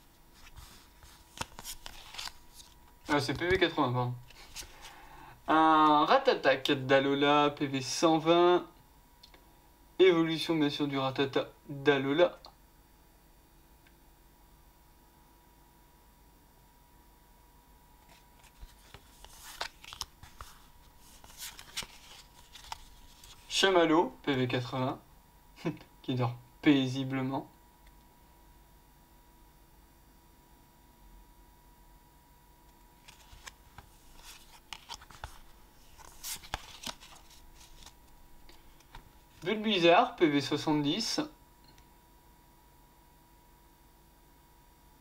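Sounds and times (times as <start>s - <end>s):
trading cards clicking and rustling: 0.4s - 3.7s, 4.3s - 5.0s, 18.0s - 23.5s, 33.0s - 39.1s.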